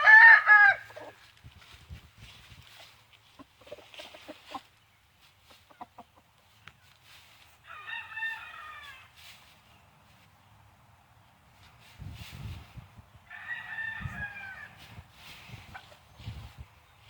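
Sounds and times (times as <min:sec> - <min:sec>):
rooster crowing: 0:00.0 - 0:00.9, 0:07.6 - 0:09.1, 0:13.3 - 0:14.8
chicken clucking: 0:02.8 - 0:07.0, 0:15.5 - 0:17.0.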